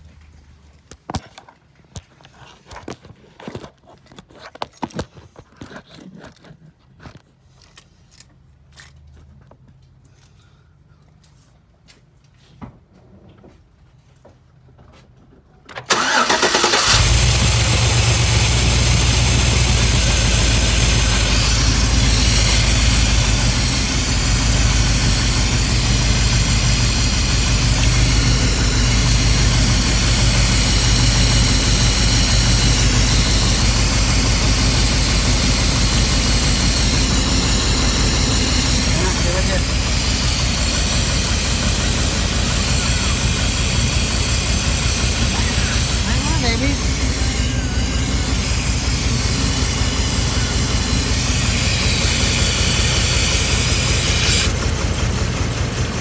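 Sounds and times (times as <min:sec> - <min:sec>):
car engine cranking and idling: 0:15.7 - 0:56.0.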